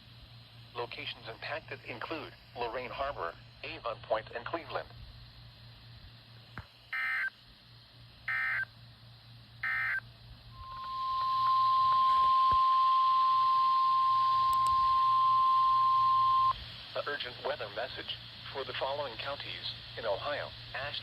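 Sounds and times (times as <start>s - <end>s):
radio hiss: 0.0s - 8.6s, 9.6s - 21.0s
steady warning alarm tone: 7.0s - 7.3s, 8.3s - 8.7s, 9.6s - 16.5s.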